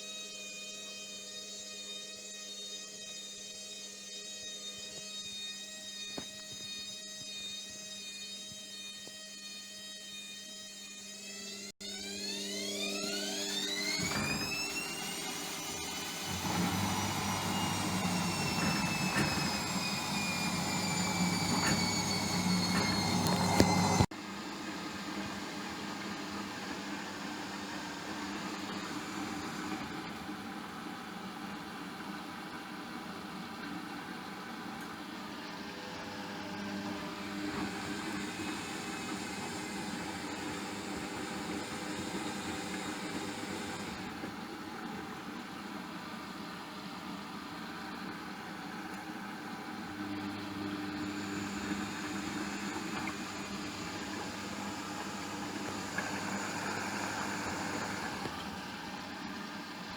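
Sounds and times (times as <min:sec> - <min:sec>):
washing machine motor whining: 0:00.0 - 0:59.9
washing machine drum humming: 0:12.2 - 0:24.1, 0:49.7 - 0:59.5.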